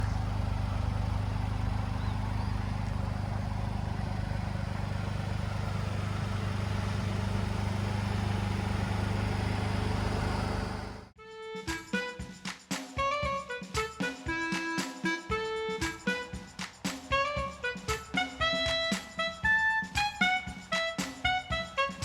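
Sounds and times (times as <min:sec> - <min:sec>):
car engine hum: 0:00.0 - 0:11.1
tyre and road noise: 0:00.0 - 0:11.1.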